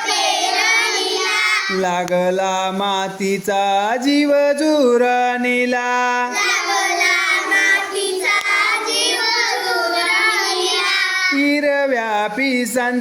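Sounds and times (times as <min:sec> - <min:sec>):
children singing in unison: 0:00.0 - 0:01.9, 0:06.0 - 0:11.4.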